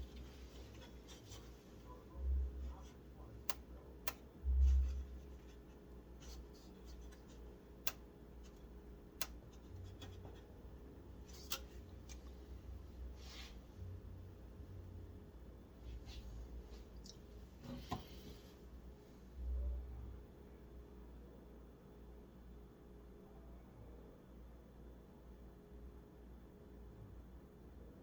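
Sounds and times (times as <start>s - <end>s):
cables rubbing and scratching: 0.0s - 3.6s, 4.4s - 7.6s, 9.4s - 10.6s.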